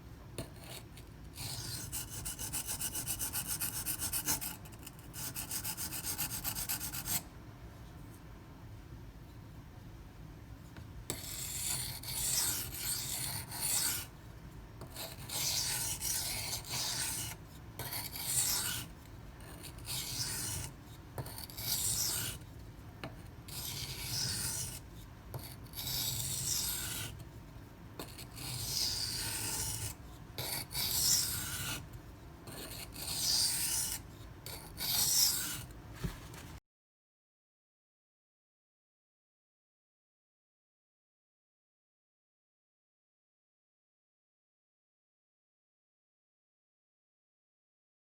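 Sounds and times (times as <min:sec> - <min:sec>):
knife scraping on sharpening stone: 0:11.2 - 0:14.1, 0:14.9 - 0:18.9, 0:19.5 - 0:22.4, 0:23.5 - 0:24.8, 0:25.4 - 0:27.2, 0:28.1 - 0:31.8, 0:32.5 - 0:35.7.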